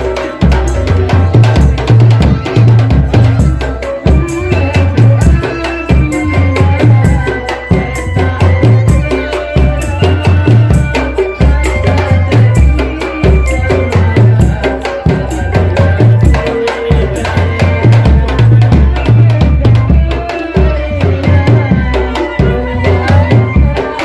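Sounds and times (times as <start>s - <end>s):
loud music with drums and bass: 0.0s - 24.0s.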